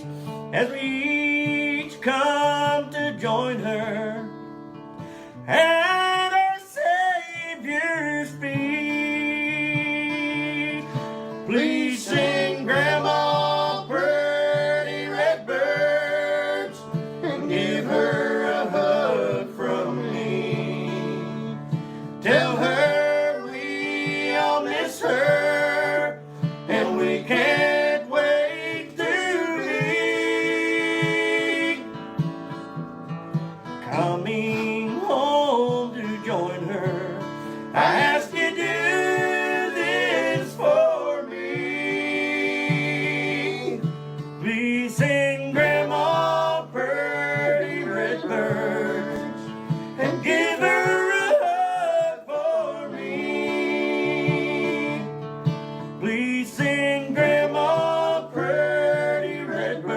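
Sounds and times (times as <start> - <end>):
acoustic string instruments: 0.0 - 59.9
voices singing: 5.5 - 32.4, 33.9 - 59.9.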